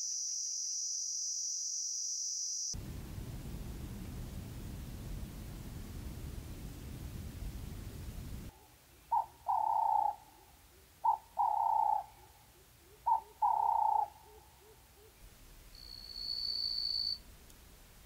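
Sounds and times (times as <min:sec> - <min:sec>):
high-pitched insect buzz: 0:00.0 - 0:02.8, 0:15.7 - 0:17.2
bird calling: 0:08.5 - 0:15.2.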